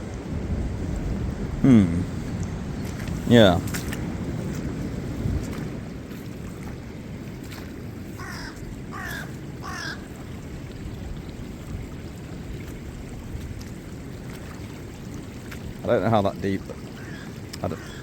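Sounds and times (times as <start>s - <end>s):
crow cawing: 8.2s - 10.1s, 17.0s - 18.0s.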